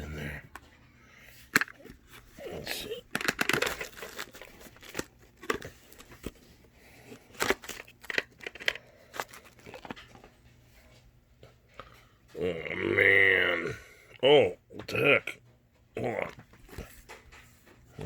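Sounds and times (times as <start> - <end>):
packaging crinkling and tearing: 1.4 - 10.3.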